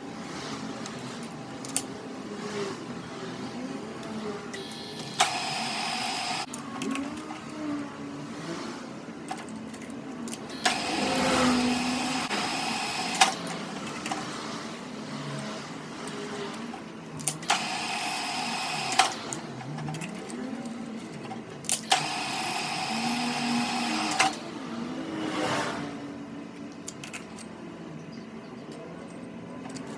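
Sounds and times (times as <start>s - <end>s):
metalworking machine running: 4.0s - 7.4s, 10.4s - 25.0s.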